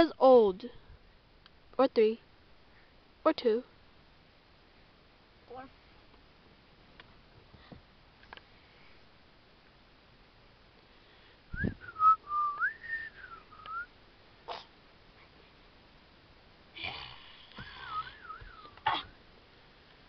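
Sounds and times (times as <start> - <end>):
person whistling a tune: 11.6 - 13.9.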